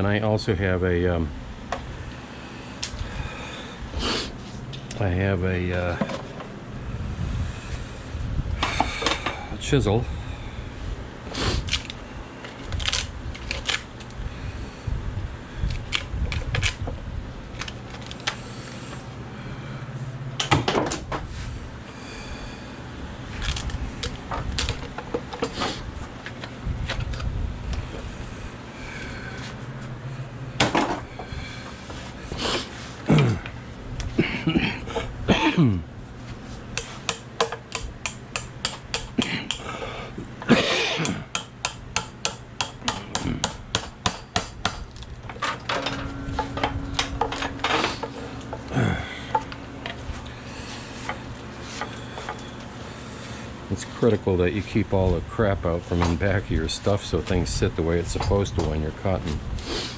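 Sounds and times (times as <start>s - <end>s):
chisel knocking on wood: 36.8s - 39.7s, 41.0s - 45.0s.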